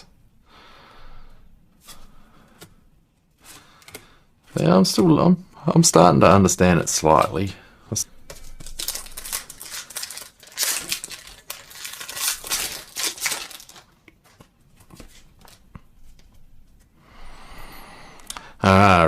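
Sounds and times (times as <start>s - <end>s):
wrapper crinkling and tearing: 8.3s - 14.4s.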